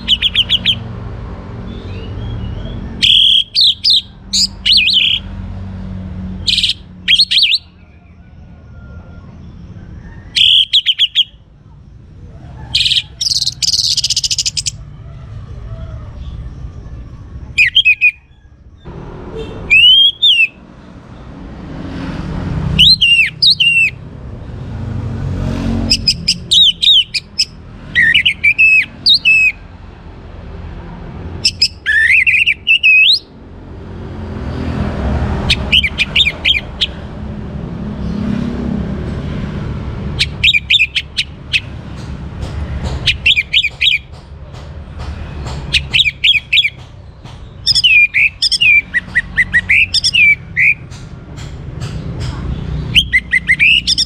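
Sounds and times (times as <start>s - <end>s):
thrush singing whistles: 0.0s - 0.8s, 1.7s - 5.3s, 6.4s - 7.9s, 10.0s - 11.4s, 12.8s - 14.8s, 17.6s - 18.3s, 19.7s - 20.6s, 22.7s - 24.0s, 25.8s - 29.6s, 31.4s - 33.3s, 35.5s - 37.0s, 40.2s - 41.7s, 43.0s - 44.1s, 45.7s - 46.8s, 47.6s - 50.9s, 52.8s - 54.0s.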